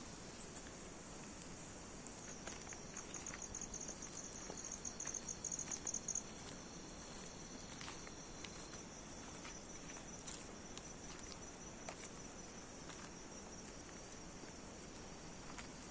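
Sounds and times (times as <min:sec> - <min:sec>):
crickets chirping: 0:00.0 - 0:15.9
faint footsteps: 0:00.2 - 0:15.9
close cricket trilling: 0:01.6 - 0:15.9.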